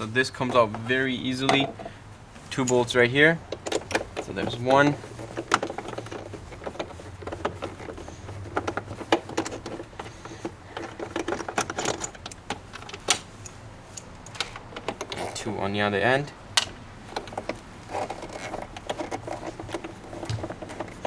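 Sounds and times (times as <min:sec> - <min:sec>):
loose parts rattling: 0:00.0 - 0:21.0
hand tool clicking on bolts: 0:00.3 - 0:15.4.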